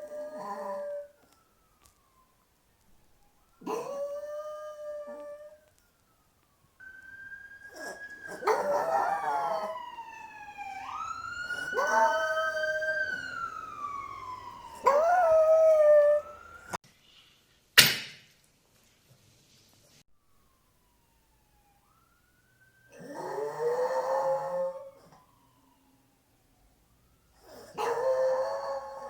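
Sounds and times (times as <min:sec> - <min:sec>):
dog howling: 0:00.0 - 0:01.2, 0:03.6 - 0:05.6, 0:07.6 - 0:16.4, 0:22.9 - 0:25.2, 0:27.4 - 0:29.0
wailing siren: 0:00.0 - 0:16.8, 0:20.1 - 0:29.0.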